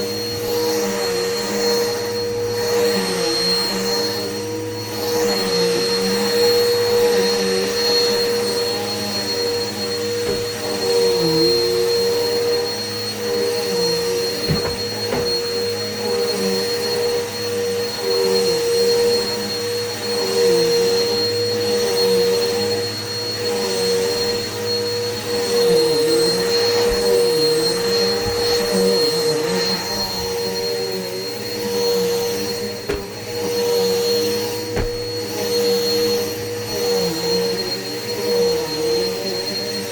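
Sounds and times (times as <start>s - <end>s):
vacuum cleaner running: 0.0s - 39.9s
faint knocks: 14.4s - 15.6s, 34.7s - 35.3s.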